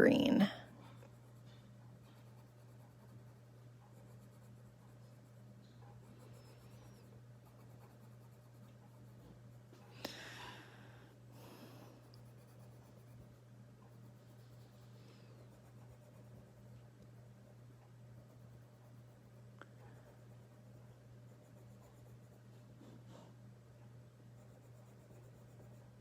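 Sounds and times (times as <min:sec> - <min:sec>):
steady low hum: 0:00.0 - 0:26.0
pencil scratching on paper: 0:00.9 - 0:09.5, 0:12.1 - 0:16.7, 0:18.2 - 0:23.3, 0:24.3 - 0:26.0.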